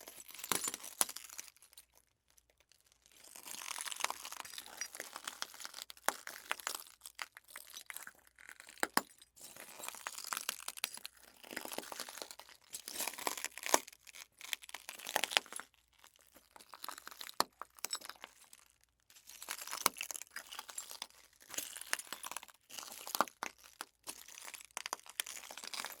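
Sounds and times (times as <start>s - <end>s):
footsteps crunching broken glass: 0.2s - 1.4s, 3.3s - 6.8s, 8.8s - 15.6s, 16.5s - 18.6s, 19.3s - 26.0s.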